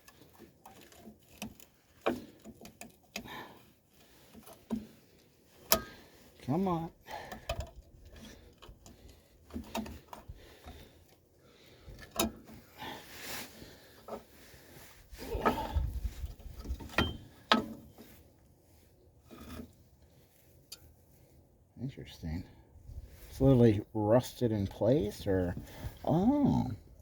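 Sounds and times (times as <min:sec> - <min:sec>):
brake tool clicking and scraping: 0:00.0 - 0:06.1, 0:11.9 - 0:12.6.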